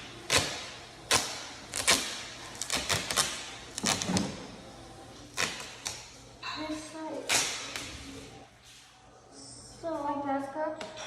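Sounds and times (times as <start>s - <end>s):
duct tape ripping: 0.3s - 4.4s, 5.3s - 6.0s.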